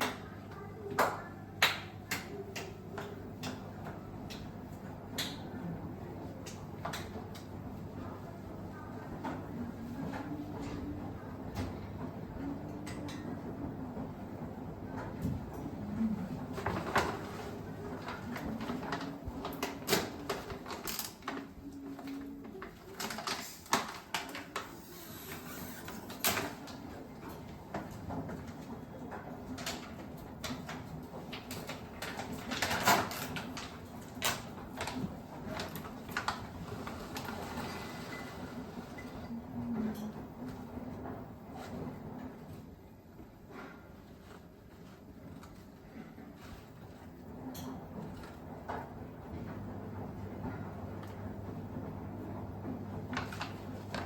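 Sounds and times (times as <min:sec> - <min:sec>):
low background noise: 0:00.0 - 0:54.0.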